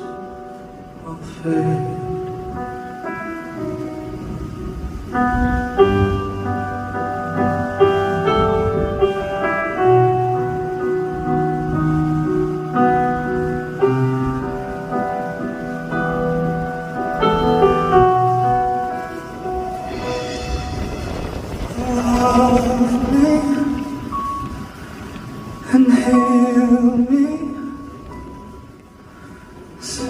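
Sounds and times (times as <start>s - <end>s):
piano chords: 0.0s - 30.0s
sustained low bass notes: 19.4s - 25.5s.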